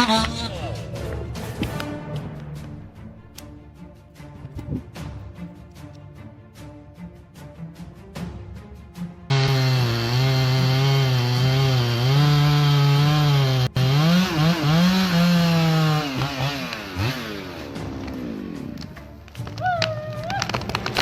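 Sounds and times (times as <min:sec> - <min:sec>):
chainsaw engine revving: 0:00.0 - 0:00.5, 0:09.3 - 0:19.0.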